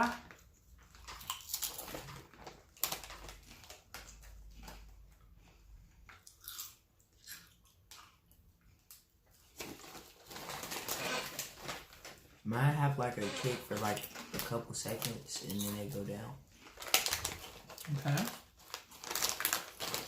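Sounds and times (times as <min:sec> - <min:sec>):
potato chips crunching: 0:00.1 - 0:05.5, 0:06.1 - 0:08.3, 0:13.2 - 0:20.0
soft chewing: 0:00.3 - 0:10.4, 0:14.0 - 0:20.0.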